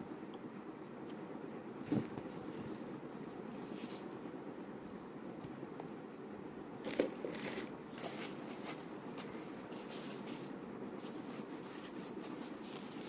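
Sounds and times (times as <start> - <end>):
low room hiss: 0.0 - 13.0.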